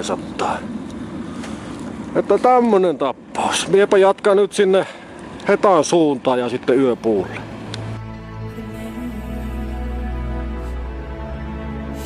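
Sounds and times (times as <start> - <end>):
low drone: 6.6 - 12.0
slow held music notes: 6.8 - 12.0.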